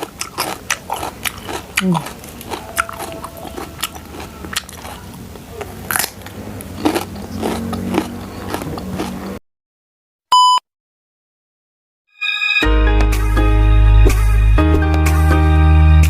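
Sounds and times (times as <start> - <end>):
crunchy food being chewed: 0.0 - 9.4
short electronic beep: 10.3 - 10.6, 12.1 - 12.8.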